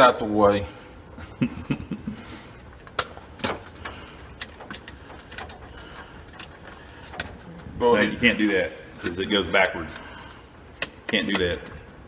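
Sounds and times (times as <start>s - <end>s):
wire connectors clicking: 2.8s - 7.5s, 8.9s - 12.0s.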